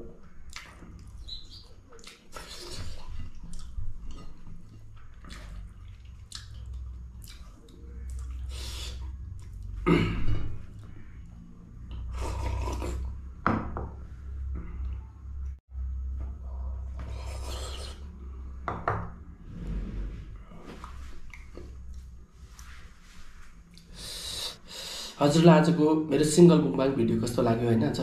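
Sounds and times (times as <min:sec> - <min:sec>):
chewing: 0:00.5 - 0:09.8.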